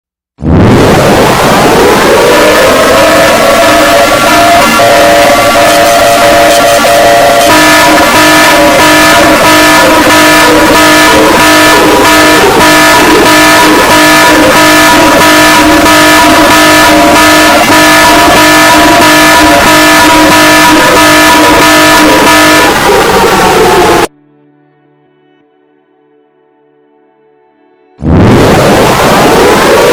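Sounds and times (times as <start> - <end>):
emergency alert alarm chord: 1.3 - 24.1.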